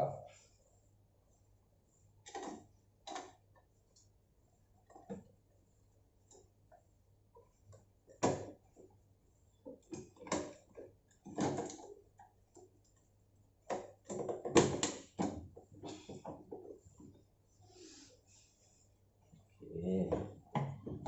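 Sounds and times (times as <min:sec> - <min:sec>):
plastic cover clacking and knocking: 0:09.7 - 0:11.9, 0:13.7 - 0:16.8, 0:20.1 - 0:21.0.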